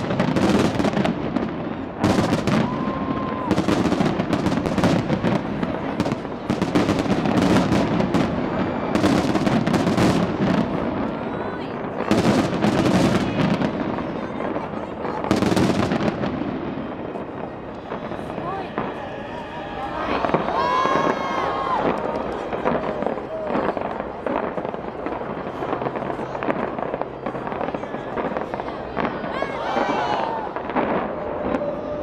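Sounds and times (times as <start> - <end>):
fireworks bangs and crackling: 0.0 - 32.0.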